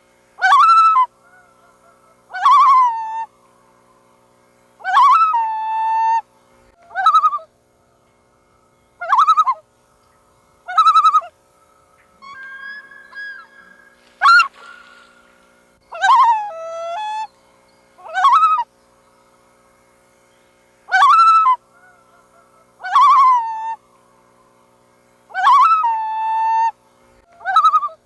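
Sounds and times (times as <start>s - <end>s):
loon calling: 0.4s - 3.3s, 4.8s - 8.0s, 8.9s - 9.7s, 10.6s - 17.3s, 18.0s - 18.7s, 20.9s - 23.8s, 25.3s - 28.0s.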